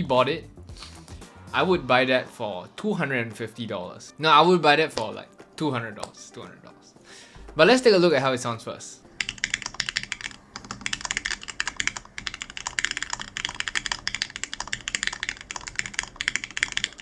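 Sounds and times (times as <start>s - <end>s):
keyboard typing: 9.1s - 17.0s.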